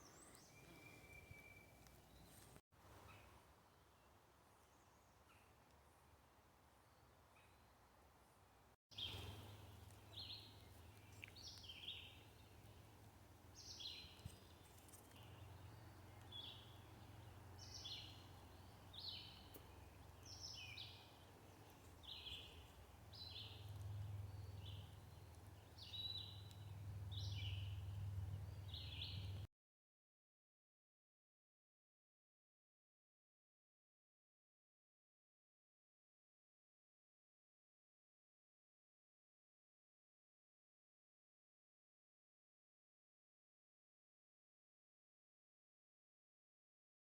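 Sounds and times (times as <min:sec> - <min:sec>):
birds chirping: 0:00.0 - 0:03.3, 0:08.9 - 0:29.5.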